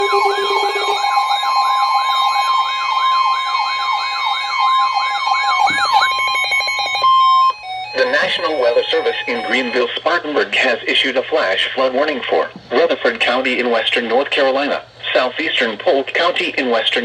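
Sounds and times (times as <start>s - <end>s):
wailing alert sweeps: 0.0s - 9.9s
steady alarm tones: 0.0s - 10.3s.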